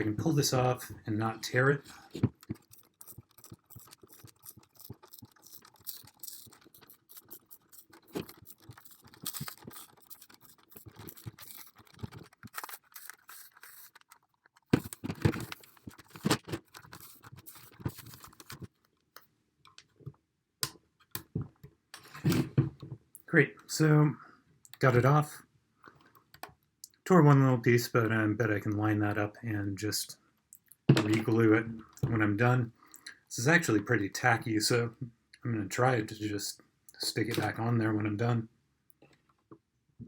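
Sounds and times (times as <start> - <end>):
sticky rubber pad peeling: 2.1 - 18.7.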